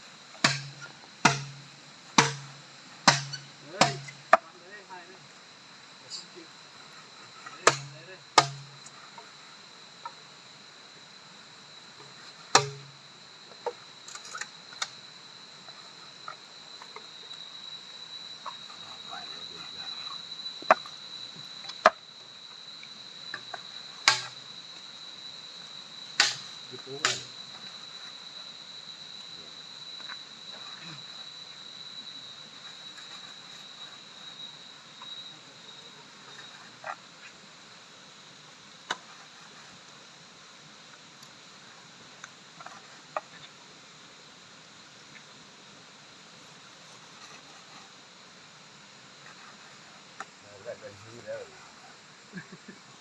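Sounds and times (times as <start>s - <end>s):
high insect drone: 0.0s - 53.0s
hiss of background animal calls: 0.0s - 53.0s
sharp knocks: 0.4s - 1.6s, 2.2s - 4.2s, 7.6s - 8.7s, 12.5s - 12.9s, 24.0s - 24.3s, 26.2s - 27.3s.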